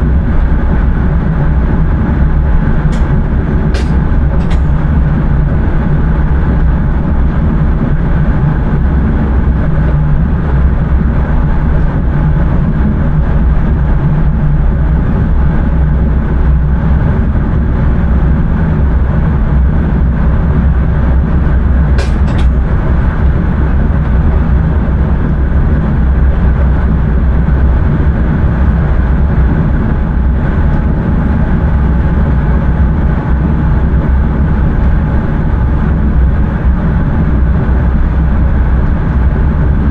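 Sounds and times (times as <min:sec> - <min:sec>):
train rumble from inside cab: 0:00.0 - 0:39.9
sharp click: 0:02.9 - 0:03.1, 0:03.7 - 0:04.8, 0:22.0 - 0:22.6.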